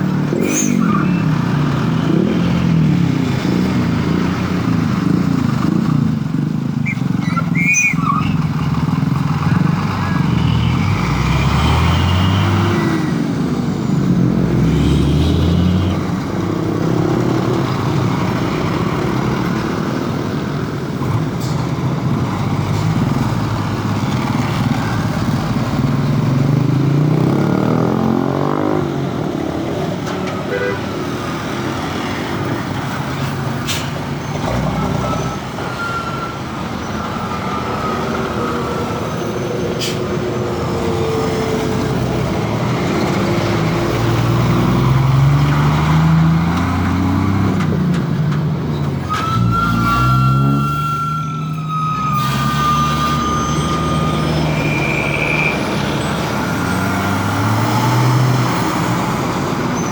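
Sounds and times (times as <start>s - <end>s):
heavy truck diesel engines: 0.0s - 59.9s.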